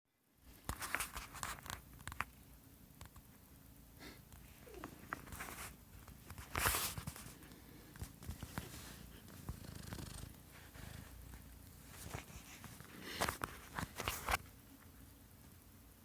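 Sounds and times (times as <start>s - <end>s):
cat purring: 4.5s - 5.4s, 7.8s - 13.2s.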